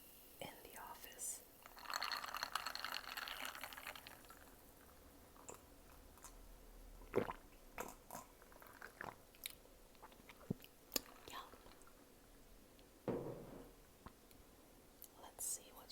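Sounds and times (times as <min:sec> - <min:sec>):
quiet chewing: 0:07.0 - 0:12.0.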